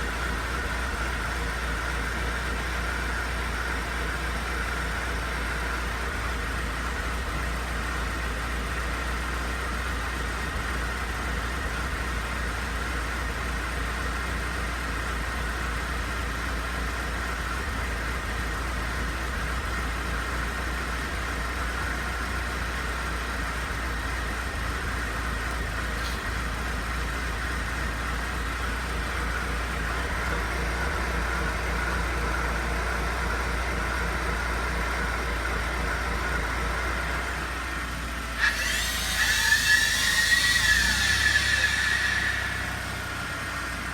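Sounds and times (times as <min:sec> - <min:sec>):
car engine idling: 0:00.0 - 0:43.9
droning air pump whine: 0:38.2 - 0:43.5.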